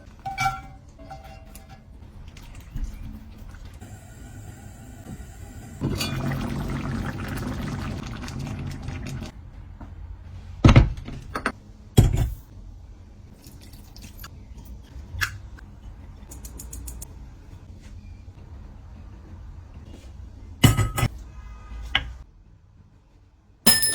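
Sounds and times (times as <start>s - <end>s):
rush of pouring liquid: 5.8s - 9.3s.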